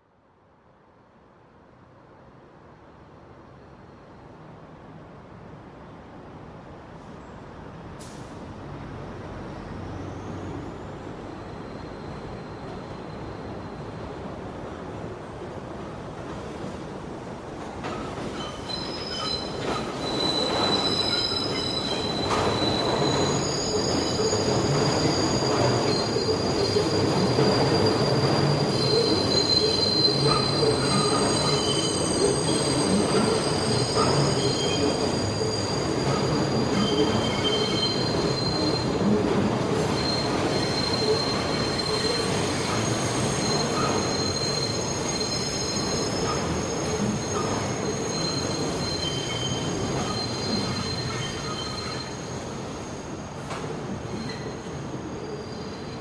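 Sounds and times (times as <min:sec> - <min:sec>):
train wheels rumbling on rails: 0:07.8 - 0:56.0
high-pitched wheel squeal: 0:18.4 - 0:39.1, 0:39.8 - 0:53.0.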